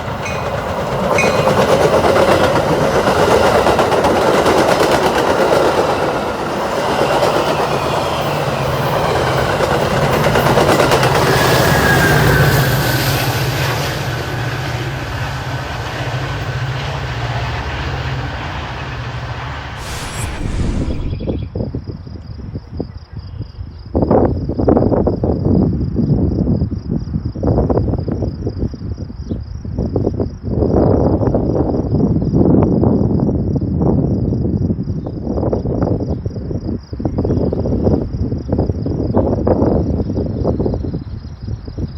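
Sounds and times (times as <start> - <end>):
train passing on rails: 0.0 - 21.4.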